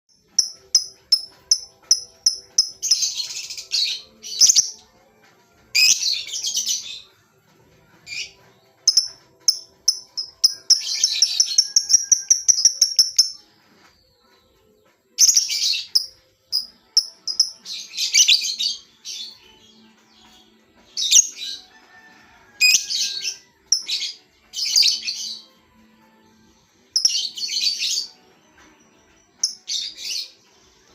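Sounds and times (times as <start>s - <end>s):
lovebird chirping and chattering: 0.4s - 4.7s, 8.9s - 13.4s, 15.2s - 18.5s, 27.0s - 27.9s.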